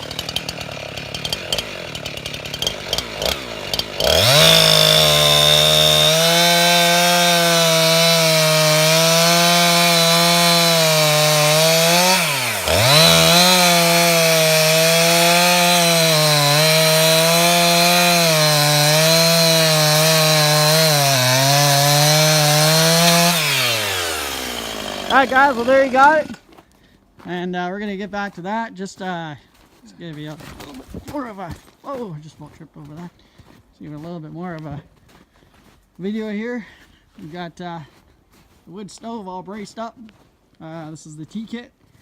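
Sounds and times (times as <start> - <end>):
chainsaw cutting wood: 0.0 - 26.6.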